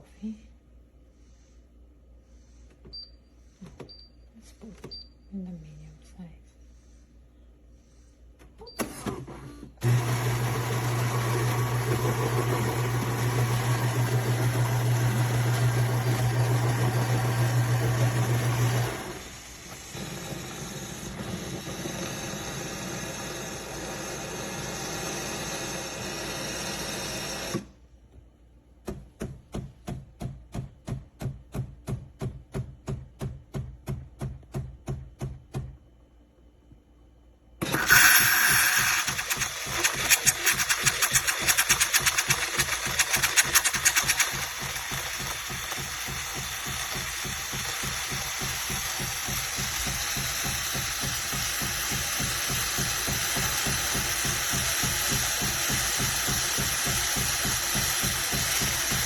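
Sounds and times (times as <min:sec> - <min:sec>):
coffee grinder running: 0:09.8 - 0:27.7, 0:37.6 - 0:59.0
espresso pump pulsing: 0:09.8 - 0:27.7, 0:37.6 - 0:59.0.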